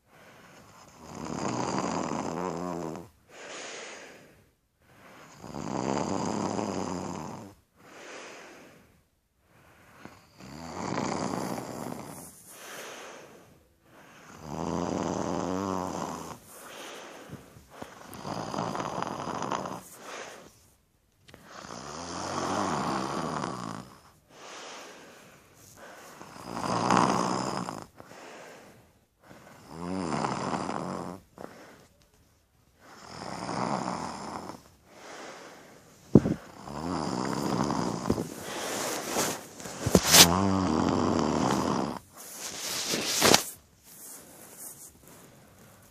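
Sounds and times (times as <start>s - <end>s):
person snoring: 0.5s - 3.1s, 5.2s - 7.6s, 10.1s - 13.6s, 14.2s - 20.5s, 21.4s - 25.2s, 25.8s - 28.1s, 29.5s - 31.6s, 32.8s - 43.4s.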